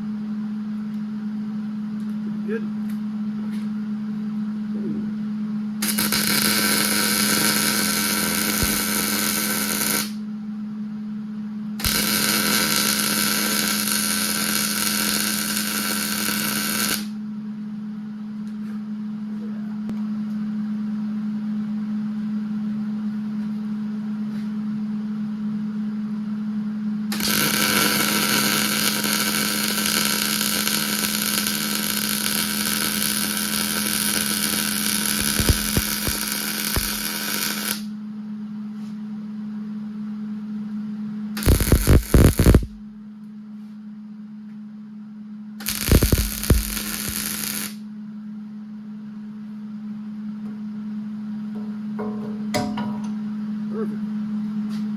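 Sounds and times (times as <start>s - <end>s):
steady low hum: 0.0s - 54.9s
welding arc crackling: 5.8s - 10.2s, 11.8s - 17.2s, 27.1s - 37.9s, 41.4s - 42.8s, 45.6s - 47.8s.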